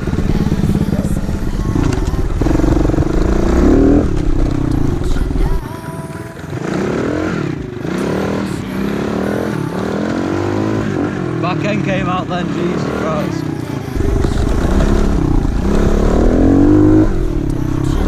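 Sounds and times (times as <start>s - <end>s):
pit bike engine revving: 14.0s - 18.0s.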